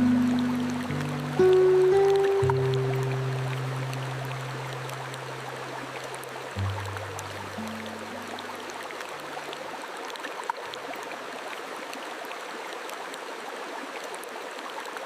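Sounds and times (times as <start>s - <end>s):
low held tones: 0.0s - 8.9s
flowing stream water: 0.0s - 15.0s.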